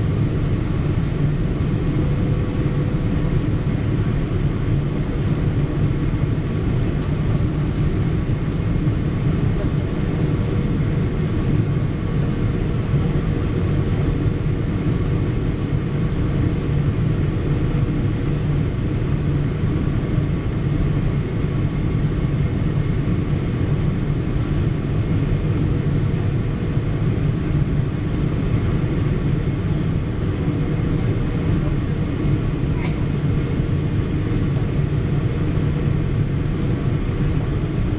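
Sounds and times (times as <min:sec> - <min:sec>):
airplane cabin roar: 0:00.0 - 0:37.9.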